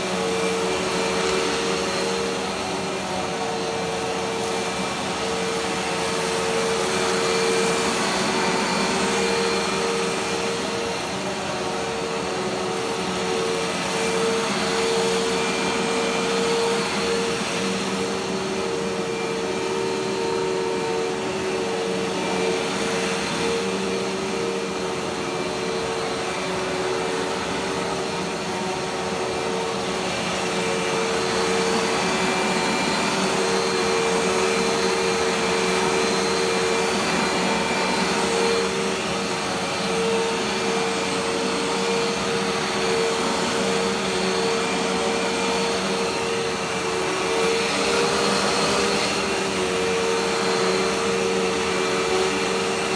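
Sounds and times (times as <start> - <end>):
vacuum cleaner running: 0.0 - 52.9.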